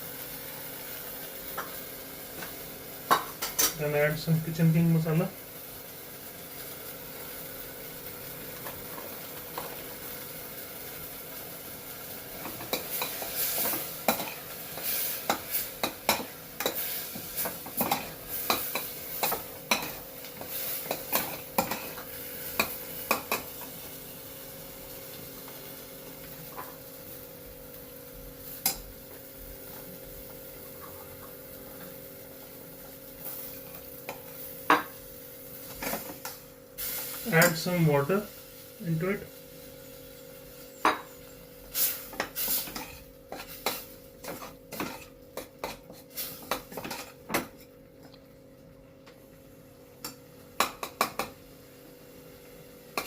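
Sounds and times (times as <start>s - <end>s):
light sizzle: 0.0s - 53.0s
spoon stirring and scraping pan: 12.4s - 23.9s, 32.8s - 35.0s, 35.6s - 37.8s, 41.8s - 47.8s.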